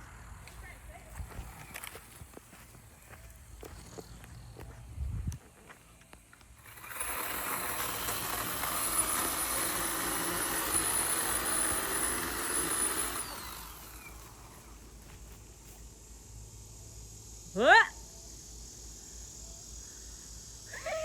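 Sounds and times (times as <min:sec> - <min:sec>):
chainsaw running: 0:06.6 - 0:14.9.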